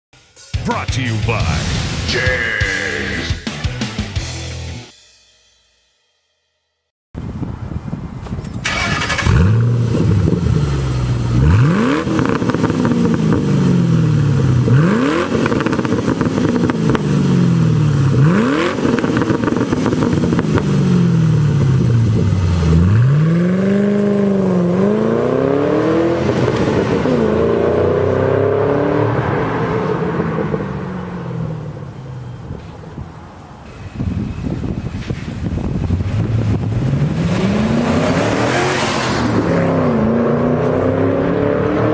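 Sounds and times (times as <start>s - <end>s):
car engine revving: 8.7s - 32.0s, 35.6s - 41.9s.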